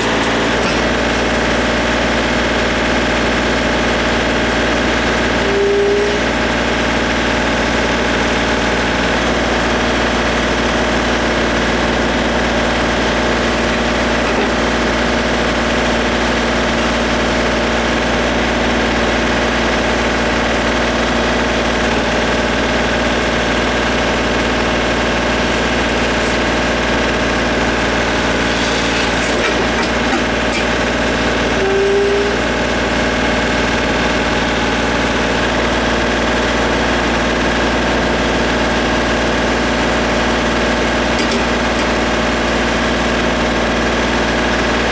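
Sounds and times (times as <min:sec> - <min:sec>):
diesel engine droning: 0:00.0 - 0:44.9
short squeak: 0:00.4 - 0:01.0, 0:05.4 - 0:06.3, 0:31.5 - 0:32.4.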